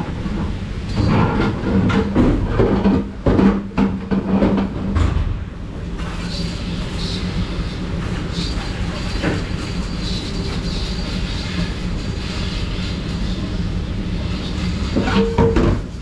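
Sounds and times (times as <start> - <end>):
mechanical rumble with low hum: 0.0 - 10.5.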